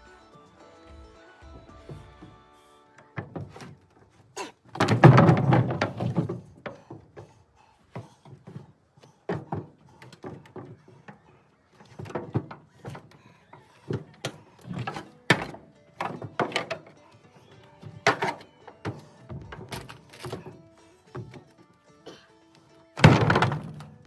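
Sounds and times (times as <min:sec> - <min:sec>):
heavy thuds and knocks: 0:04.7 - 0:07.3, 0:07.9 - 0:11.2, 0:23.0 - 0:24.0.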